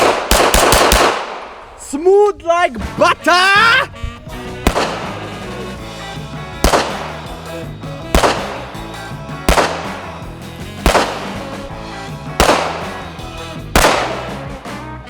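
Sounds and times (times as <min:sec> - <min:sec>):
handgun shots with ringing echo: 0:00.0 - 0:01.6, 0:06.6 - 0:07.0, 0:08.2 - 0:08.6, 0:09.5 - 0:10.0, 0:10.9 - 0:11.4, 0:12.4 - 0:12.9, 0:13.8 - 0:14.3
background music: 0:02.4 - 0:15.0.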